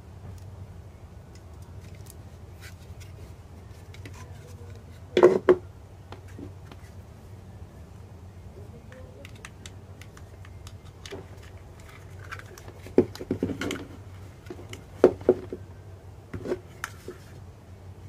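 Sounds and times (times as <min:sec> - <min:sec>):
steady low hum: 0:00.0 - 0:18.0
handling clicks and knocks: 0:08.8 - 0:15.6.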